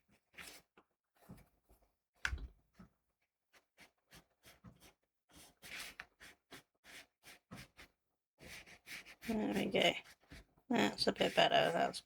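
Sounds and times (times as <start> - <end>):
paintbrush strokes on paper: 8.4 - 12.0.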